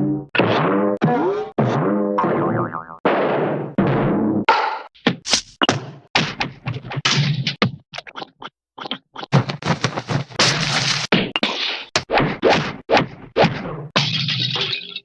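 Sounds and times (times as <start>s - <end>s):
cartoon hit and knock effects: 0.4s - 4.1s.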